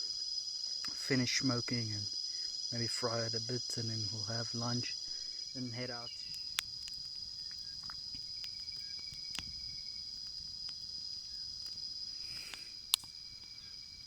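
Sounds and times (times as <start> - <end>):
insect chorus droning: 0.0 - 14.0
sharp clicks: 12.4 - 13.2.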